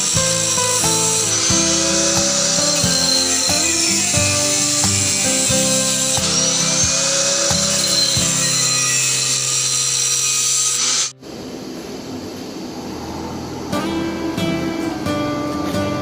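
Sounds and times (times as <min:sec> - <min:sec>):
pellet mill whining and knocking: 0:00.0 - 0:11.1.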